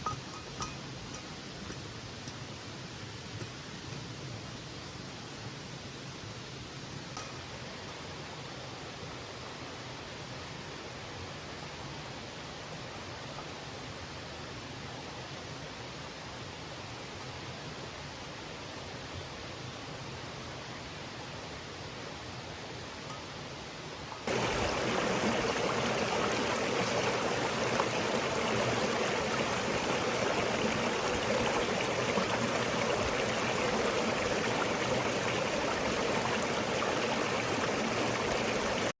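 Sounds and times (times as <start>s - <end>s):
creek water rushing: 24.1s - 39.0s.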